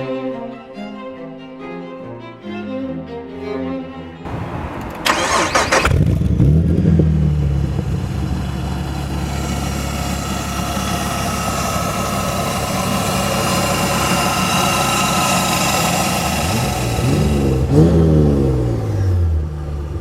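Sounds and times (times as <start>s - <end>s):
engine cranking: 4.3s - 19.3s
car engine revving and idling: 4.3s - 20.0s.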